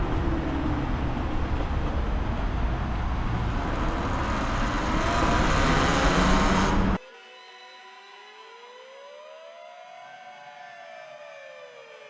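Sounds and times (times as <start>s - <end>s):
electric motor whine: 0.0s - 7.0s
wind buffeting microphone: 0.0s - 7.0s.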